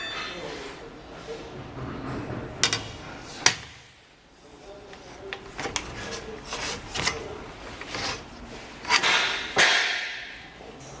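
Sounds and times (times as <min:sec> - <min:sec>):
metal scraping: 0:05.0 - 0:10.2
steel plate clanking: 0:06.8 - 0:10.4.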